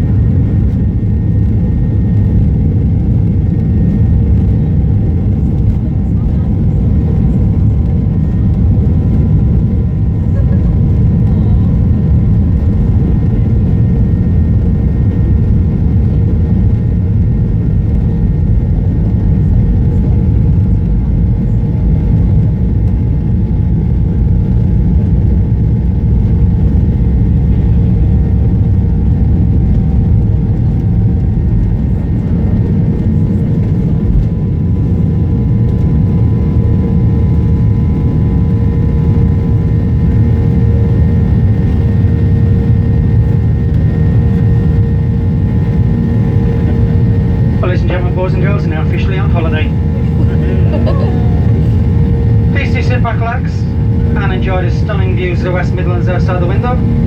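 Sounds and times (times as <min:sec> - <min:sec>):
jet engines deep rush: 0:00.0 - 0:57.0
faint constant hum: 0:45.1 - 0:57.0.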